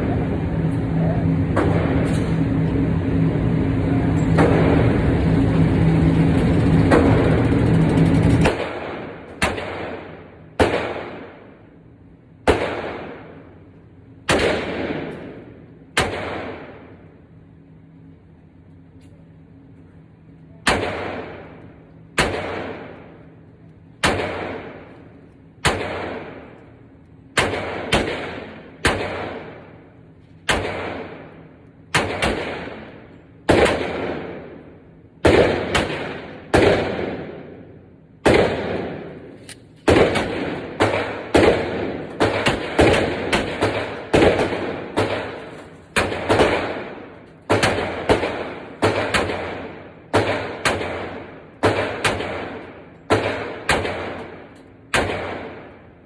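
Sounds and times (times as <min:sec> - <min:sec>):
pistol shots with ringing echo: 0:01.5 - 0:02.5, 0:04.2 - 0:05.0, 0:08.4 - 0:11.8, 0:12.4 - 0:13.6, 0:14.2 - 0:17.2, 0:20.6 - 0:23.3, 0:24.0 - 0:56.0.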